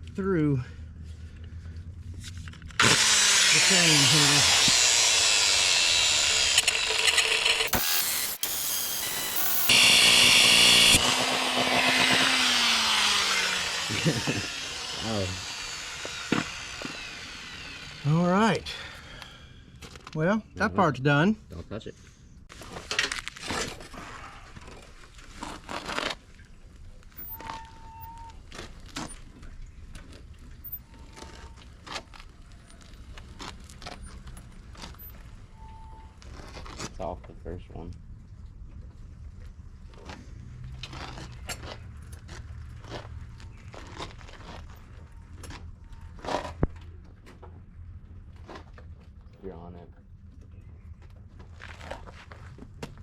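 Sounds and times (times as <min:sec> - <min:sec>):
grinder cutting steel chain: 0:02.7 - 0:18.9, 0:27.2 - 0:28.1
grinder motor whine: 0:02.7 - 0:19.0.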